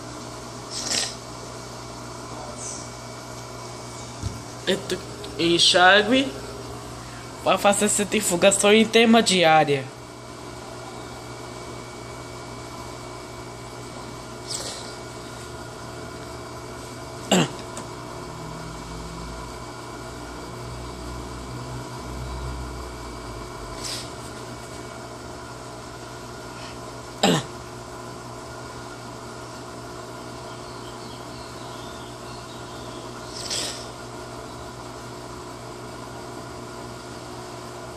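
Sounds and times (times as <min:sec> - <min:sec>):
washing machine humming: 0:00.0 - 0:37.9.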